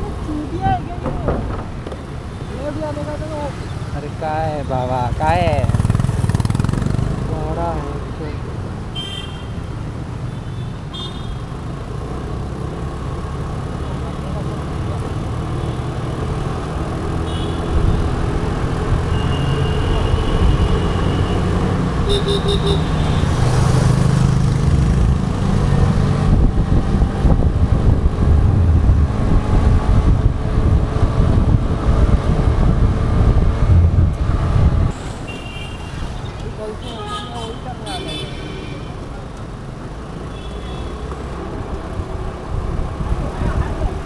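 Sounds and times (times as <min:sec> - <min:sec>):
road traffic rumble: 0:00.0 - 0:44.0
vehicle horns tooting: 0:08.9 - 0:09.6, 0:17.2 - 0:18.0, 0:19.0 - 0:23.6, 0:35.2 - 0:39.1, 0:40.2 - 0:41.3.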